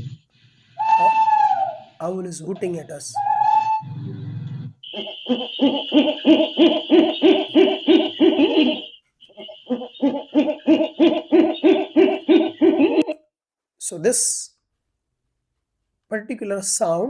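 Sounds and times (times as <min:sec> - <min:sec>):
owl hooting: 0:00.7 - 0:13.2
steady high tone: 0:00.8 - 0:04.0, 0:04.8 - 0:13.2.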